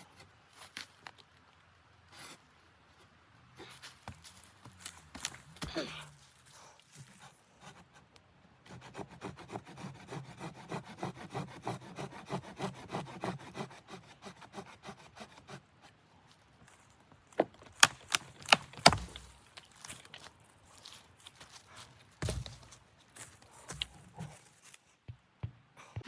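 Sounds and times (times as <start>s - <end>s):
sharp cracks: 17.7s - 19.4s.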